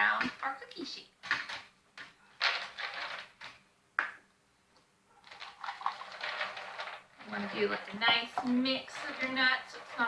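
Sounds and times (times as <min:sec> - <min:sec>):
nuts clattering onto a metal sheet: 0:02.4 - 0:03.6, 0:05.3 - 0:10.0.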